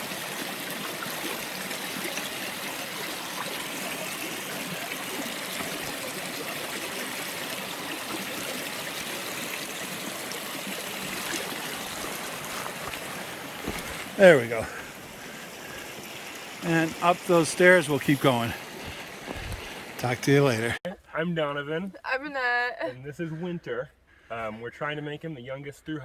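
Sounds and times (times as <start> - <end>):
river flowing over rocks: 0.0 - 20.8.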